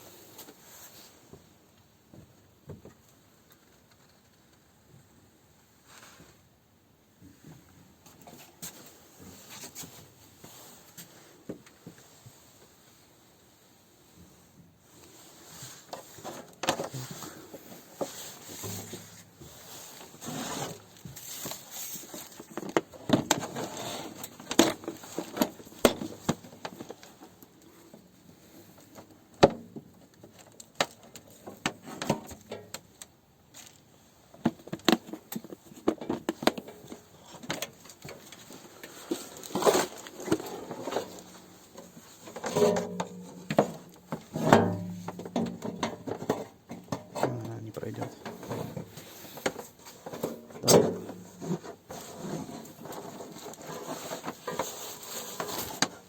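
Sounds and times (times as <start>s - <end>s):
rustling: 14.2s - 29.4s, 30.0s - 56.0s
objects clicking and knocking: 28.8s - 56.0s.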